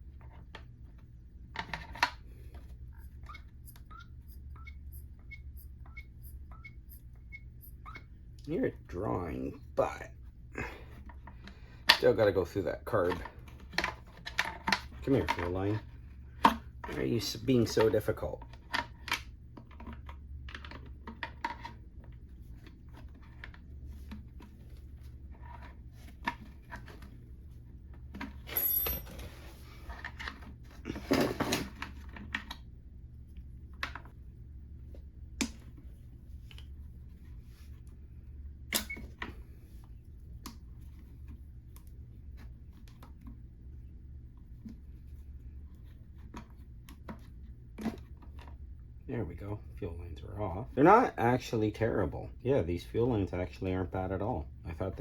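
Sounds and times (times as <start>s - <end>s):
steady low hum: 0.0s - 55.0s
scraping and handling: 9.6s - 38.2s.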